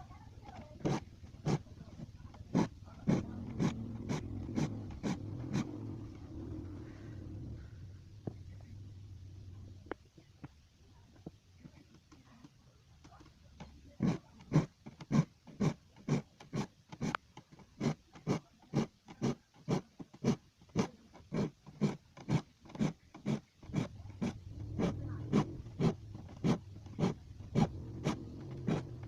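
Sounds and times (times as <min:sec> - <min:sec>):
metal file rasping on saw teeth: 0:02.4 - 0:05.8, 0:17.8 - 0:29.0.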